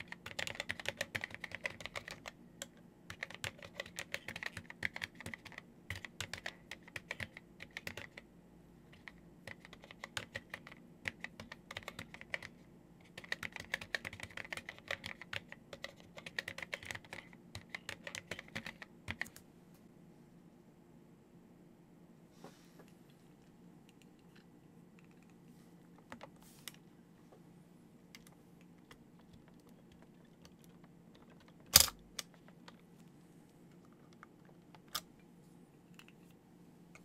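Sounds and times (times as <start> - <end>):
mechanical keyboard typing: 0.0 - 8.2, 9.0 - 19.4, 28.9 - 32.4.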